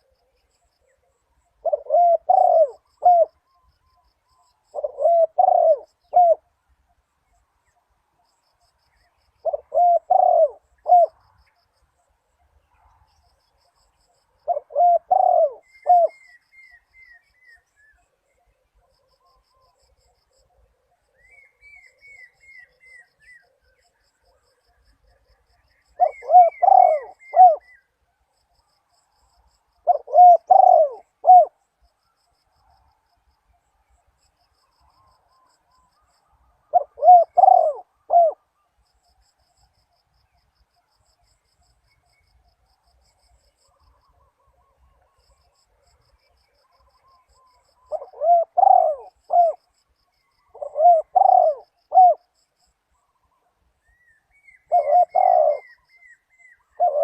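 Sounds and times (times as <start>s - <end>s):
dove cooing: 1.6s - 6.6s, 9.4s - 11.3s, 14.4s - 27.9s, 29.8s - 31.6s, 36.6s - 38.5s, 43.6s - 49.7s, 50.4s - 52.4s, 54.4s - 57.0s.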